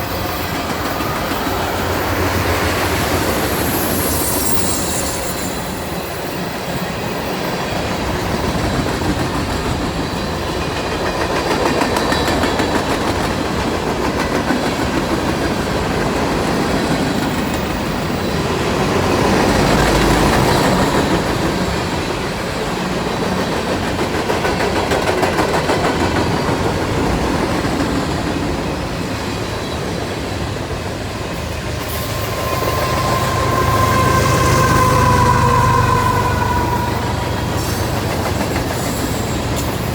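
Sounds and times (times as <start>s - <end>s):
high steady squeal: 0.0s - 7.6s, 31.3s - 39.9s
freight train wheels clattering on rails: 0.0s - 39.9s.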